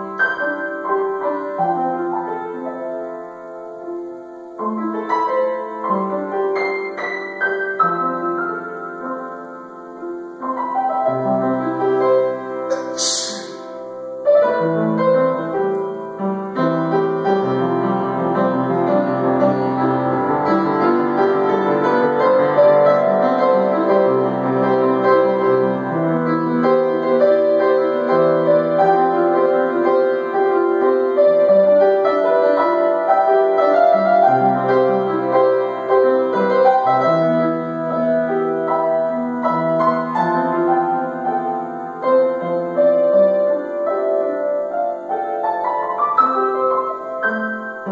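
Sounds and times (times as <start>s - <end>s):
solo piano piece: 0.0s - 47.9s
burst of hissy noise: 12.5s - 14.2s.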